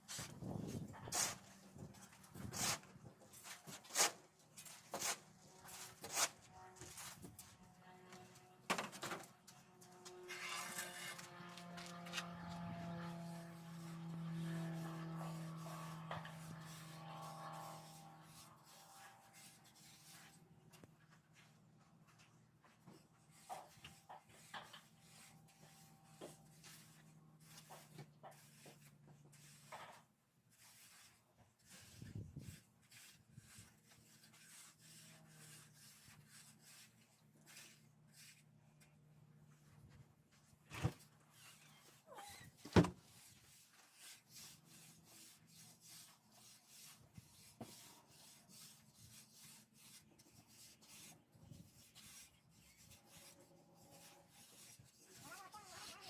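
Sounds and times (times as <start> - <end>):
shovel scraping gravel: 0.7 - 1.4, 2.4 - 2.8.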